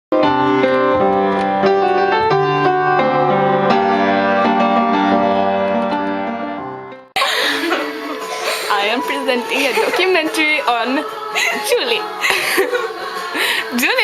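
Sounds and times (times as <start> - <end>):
slow piano chords: 0.2 - 10.4.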